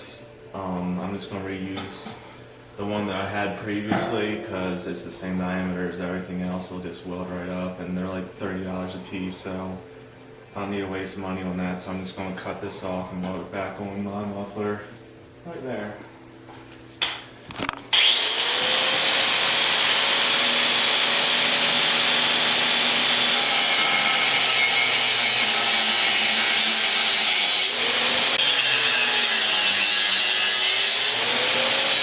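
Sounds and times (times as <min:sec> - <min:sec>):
power tool cutting metal pipe: 0:17.9 - 0:32.0.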